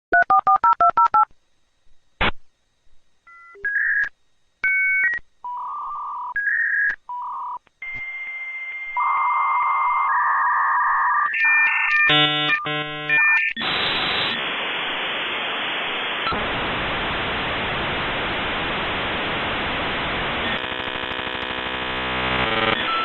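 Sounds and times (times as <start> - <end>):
modem handshake tones and hiss: 11.8 - 23.0.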